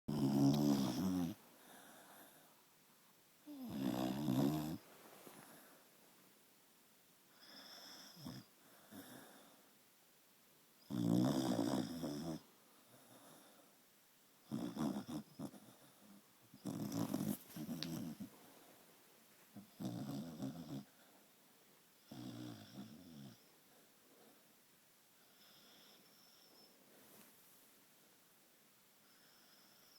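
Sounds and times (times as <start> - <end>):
dog snoring: 0.1 - 2.4, 3.5 - 4.8, 7.4 - 9.5, 10.8 - 13.6, 14.4 - 18.3, 19.6 - 20.9, 22.0 - 23.5
faint breathing: 1.5 - 2.6.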